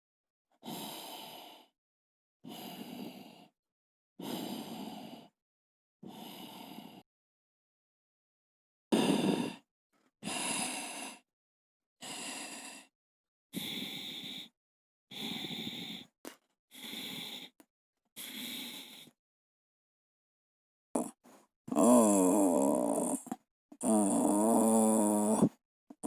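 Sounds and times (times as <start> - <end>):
person snoring: 8.9 - 9.7, 21.0 - 25.6.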